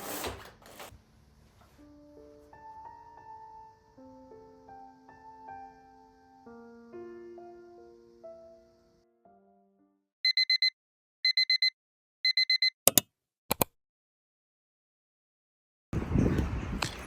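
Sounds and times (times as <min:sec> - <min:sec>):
soft piano music: 0:01.6 - 0:10.0
electronic alarm beeping: 0:10.3 - 0:10.7, 0:11.3 - 0:11.7, 0:12.3 - 0:12.8.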